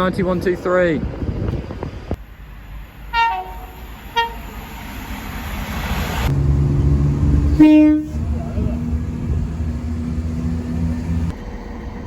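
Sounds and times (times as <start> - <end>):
approaching train rumble: 0.0 - 12.0
train horn blast: 3.1 - 4.5, 7.4 - 8.8.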